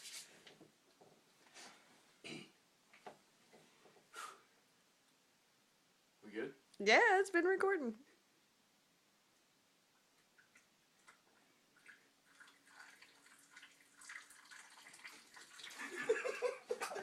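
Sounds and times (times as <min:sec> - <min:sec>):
liquid splashing and dripping: 0:10.2 - 0:16.1.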